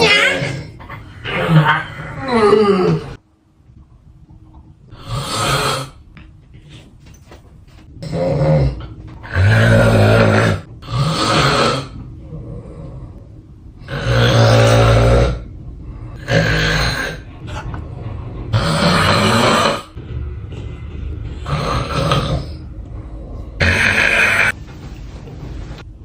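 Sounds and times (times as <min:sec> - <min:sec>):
person snoring loudly: 0:04.9 - 0:06.0, 0:08.0 - 0:13.0, 0:13.8 - 0:15.5, 0:16.2 - 0:17.3, 0:18.5 - 0:20.0, 0:21.4 - 0:22.7, 0:23.6 - 0:24.6.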